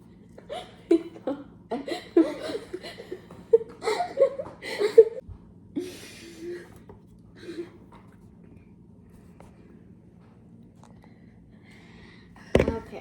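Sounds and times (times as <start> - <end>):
people laughing: 0.5 - 5.2.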